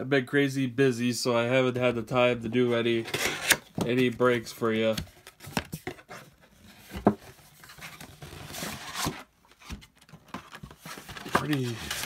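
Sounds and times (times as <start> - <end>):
cardboard tearing rustle: 10.8 - 12.0.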